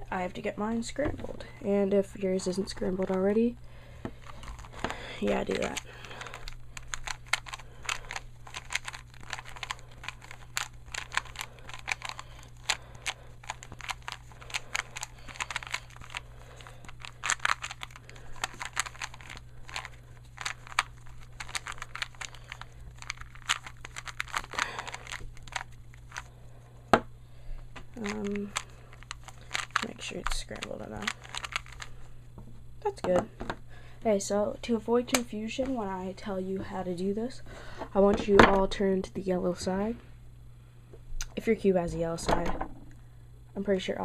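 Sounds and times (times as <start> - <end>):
puzzle cube plastic clicks: 4.2 - 26.3, 28.0 - 31.9.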